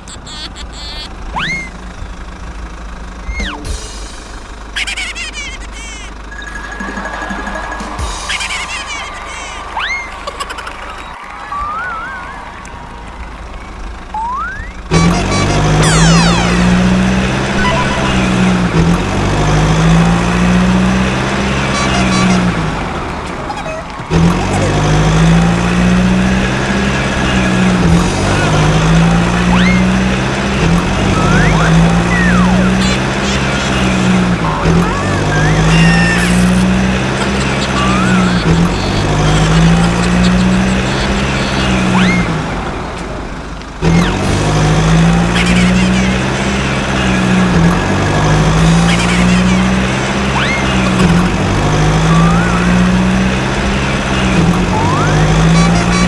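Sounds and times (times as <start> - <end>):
engine low drone: 0.0 - 56.0
background music: 6.3 - 9.5
rising whistling glides: 10.9 - 14.9
falling whistle: 11.0 - 12.6.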